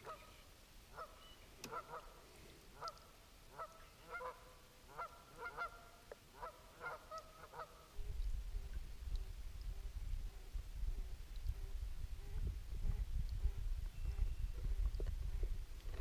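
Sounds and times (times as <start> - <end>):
geese honking: 0.0 - 2.2, 2.8 - 7.8.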